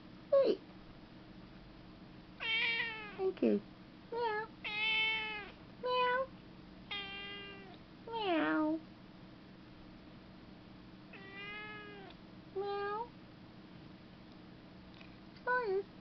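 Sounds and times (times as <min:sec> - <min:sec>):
cat meowing: 0:02.4 - 0:03.2, 0:04.2 - 0:06.3, 0:06.9 - 0:08.6, 0:11.1 - 0:12.2.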